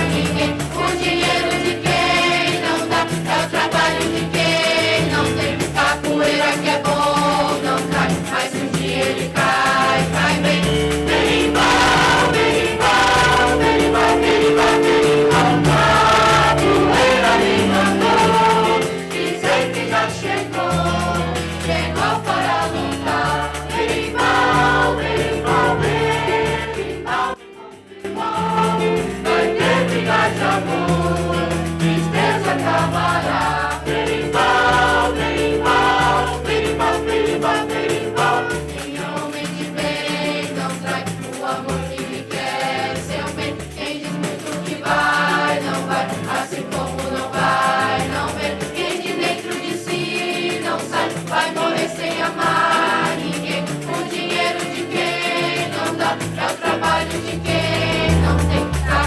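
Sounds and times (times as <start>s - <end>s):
choir singing: 0.0s - 59.0s
instrumental accompaniment with bass: 0.0s - 59.0s.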